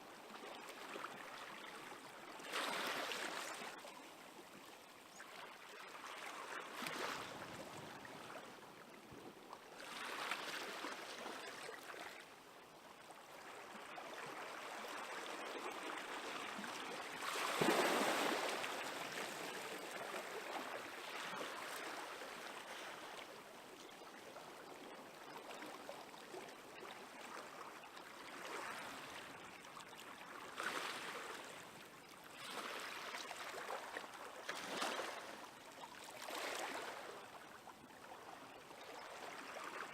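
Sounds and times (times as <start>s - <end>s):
small waves washing ashore: 0.5s - 4.0s, 9.7s - 12.1s, 13.4s - 23.4s, 26.9s - 37.4s.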